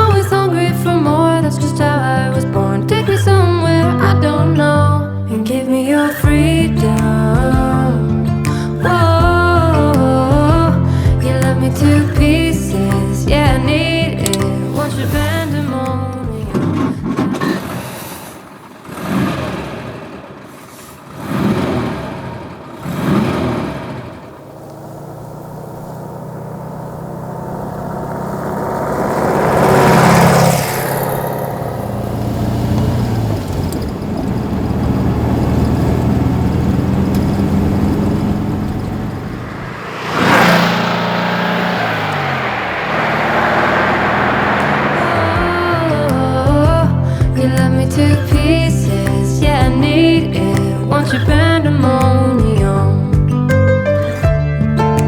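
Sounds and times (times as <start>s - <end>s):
car engine revving: 16.6s - 52.4s.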